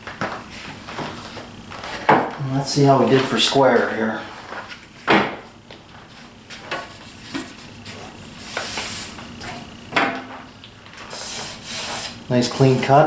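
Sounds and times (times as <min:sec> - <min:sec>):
wood and tools knocking: 0:01.8 - 0:02.4, 0:04.5 - 0:05.5.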